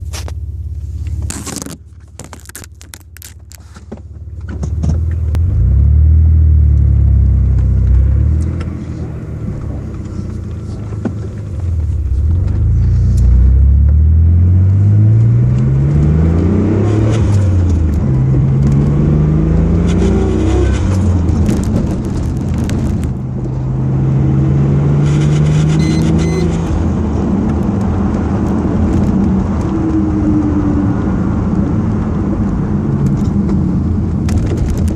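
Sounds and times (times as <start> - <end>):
car engine revving: 4.6 - 34.9.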